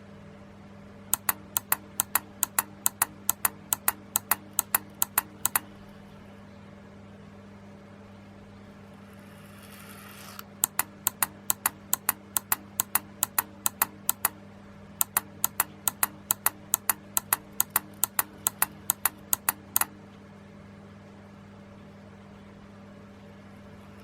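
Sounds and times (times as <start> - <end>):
low steady hum: 0.0 - 24.0
relays clicking rapidly: 1.2 - 5.9, 10.6 - 14.3, 15.0 - 19.9.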